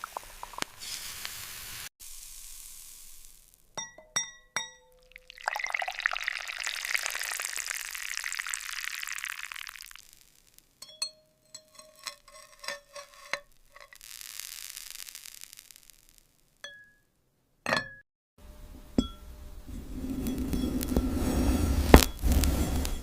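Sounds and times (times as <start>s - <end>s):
hiss: 0.0s - 3.8s, 13.8s - 16.4s, 19.7s - 23.0s
glassy knock: 3.8s - 5.4s, 10.8s - 11.7s, 16.6s - 17.0s, 17.7s - 18.0s, 19.0s - 19.3s
glass pieces clinking: 10.8s - 13.9s.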